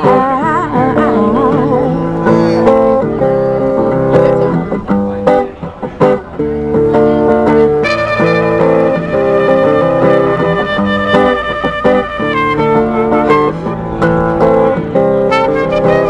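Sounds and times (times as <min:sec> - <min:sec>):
guitar chords: 0:00.0 - 0:16.0
bright high notes: 0:07.8 - 0:13.7.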